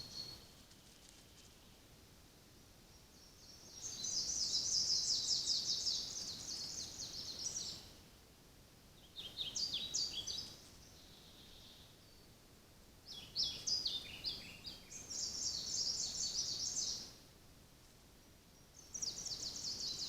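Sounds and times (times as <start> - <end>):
songbirds singing: 0.0 - 0.5, 2.7 - 8.0, 8.9 - 17.3, 18.2 - 20.0.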